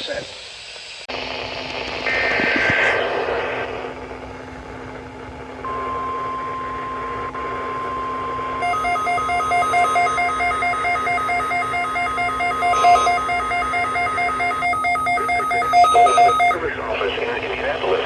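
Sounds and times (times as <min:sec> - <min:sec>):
radio static: 0:01.1 - 0:04.3, 0:05.7 - 0:18.0
receiver alert beeping: 0:05.6 - 0:16.6
steady warning alarm tone: 0:05.6 - 0:16.7.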